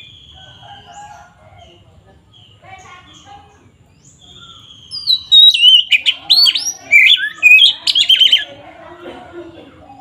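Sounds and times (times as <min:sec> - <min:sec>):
bird singing whistled notes: 0:00.0 - 0:01.0, 0:04.0 - 0:08.5.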